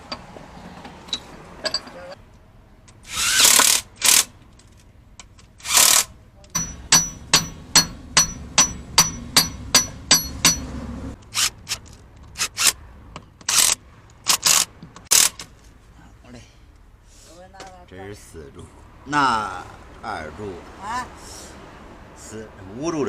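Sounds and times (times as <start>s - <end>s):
hammer striking metal: 6.6s - 10.8s.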